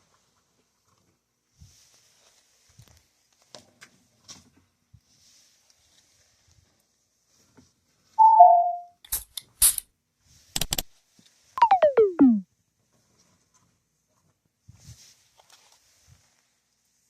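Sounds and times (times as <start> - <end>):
falling two-note chime: 8.2 - 8.9
sharp clicks: 10.6 - 10.9.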